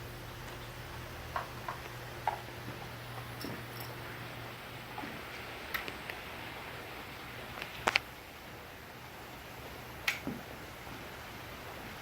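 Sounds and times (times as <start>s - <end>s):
low hum and hiss: 0.0s - 12.0s
metallic tool clinks: 3.4s - 4.0s.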